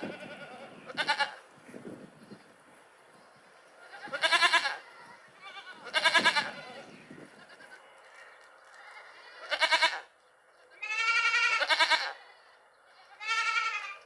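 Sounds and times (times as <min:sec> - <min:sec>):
animal bleating calls: 0:00.0 - 0:01.4, 0:03.8 - 0:07.9, 0:08.8 - 0:10.1, 0:10.7 - 0:14.0.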